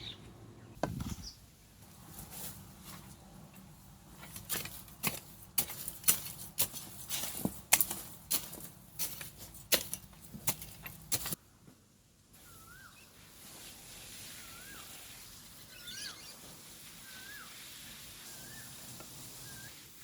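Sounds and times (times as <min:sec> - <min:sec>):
warbling bird whistle: 0:12.4 - 0:13.0.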